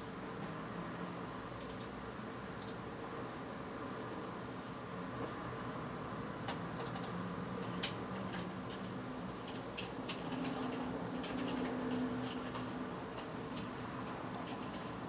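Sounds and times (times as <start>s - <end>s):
keyboard keys clicking: 6.8s - 7.2s.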